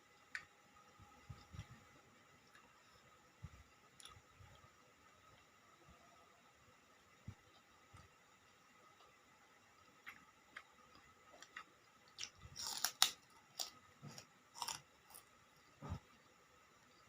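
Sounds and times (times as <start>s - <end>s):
crunching crackers: 9.8s - 15.4s.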